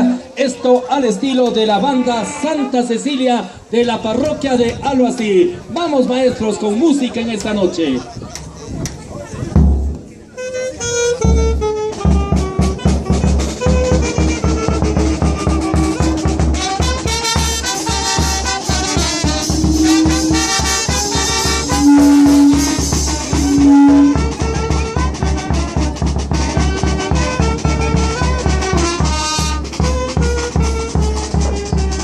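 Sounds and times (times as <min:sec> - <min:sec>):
brass band playing: 0:00.0 - 0:00.5, 0:10.4 - 0:32.0
drum beat: 0:11.3 - 0:32.0.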